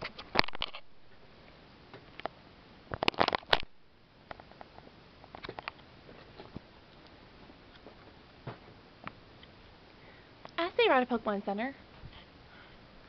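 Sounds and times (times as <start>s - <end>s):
knocks and rustling: 7.4s - 8.8s.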